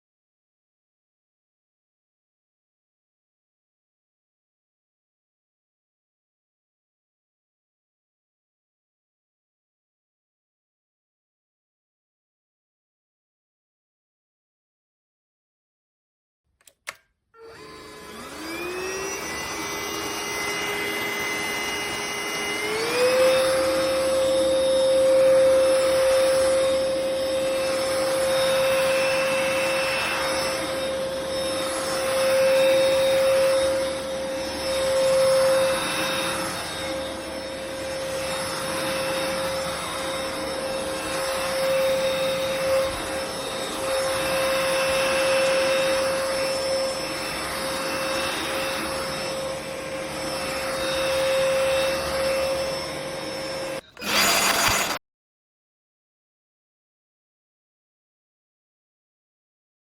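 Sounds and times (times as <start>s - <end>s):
stick vacuum running: 16.6s - 55.0s.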